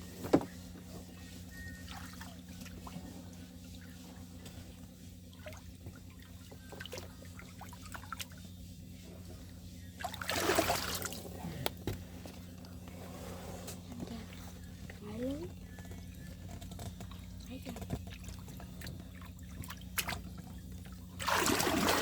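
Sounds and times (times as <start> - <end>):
rush of splashing water: 21.2 - 22.0.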